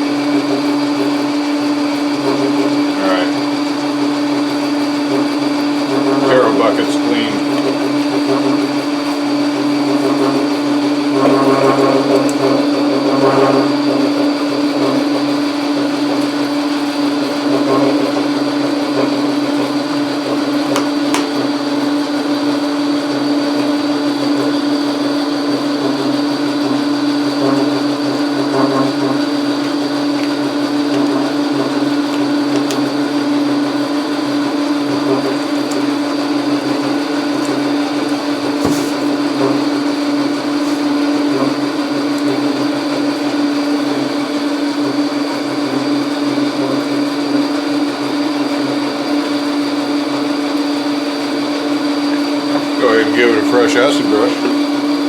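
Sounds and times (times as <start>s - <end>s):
metal lathe humming: 0.0s - 55.0s.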